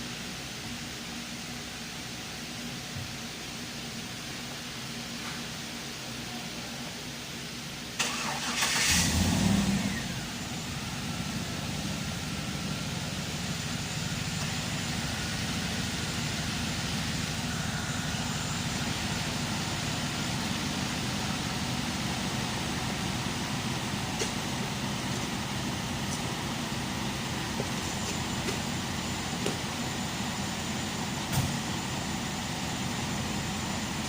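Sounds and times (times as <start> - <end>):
vehicle engine starting and idling: 7.9 - 34.0
ignition click: 8.0 - 9.0.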